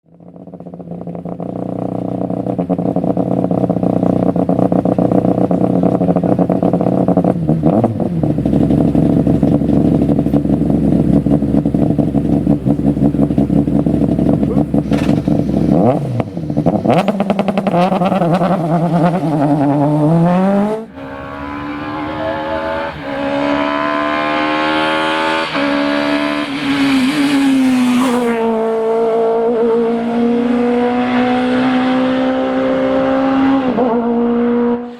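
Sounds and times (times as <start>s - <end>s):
rally car engine revving: 0.1s - 34.9s
engine gear changes: 4.0s - 24.6s.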